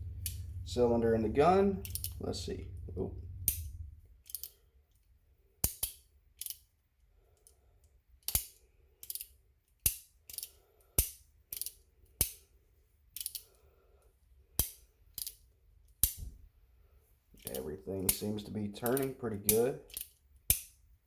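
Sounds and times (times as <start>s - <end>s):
revolver cylinder ratcheting: 1.8s - 4.6s.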